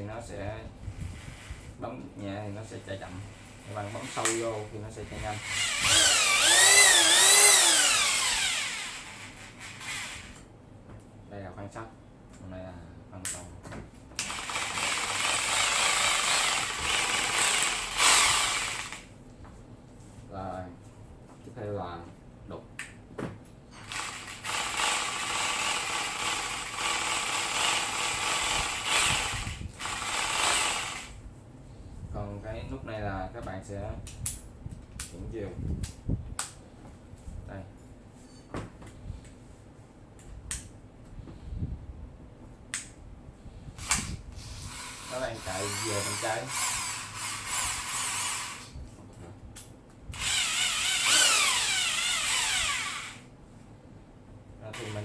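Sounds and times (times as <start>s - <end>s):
rotary hammer drill chiselling: 3.7s - 10.4s, 14.2s - 19.1s, 23.8s - 31.2s, 43.8s - 48.8s, 50.1s - 53.3s, 54.8s - 55.0s.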